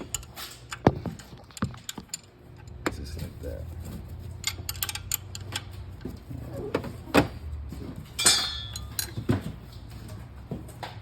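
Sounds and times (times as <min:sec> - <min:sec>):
steady low hum: 0:00.0 - 0:11.0
metal tools knocking and clinking: 0:04.4 - 0:05.8, 0:08.2 - 0:09.4
ringing metallic clink: 0:08.2 - 0:09.2.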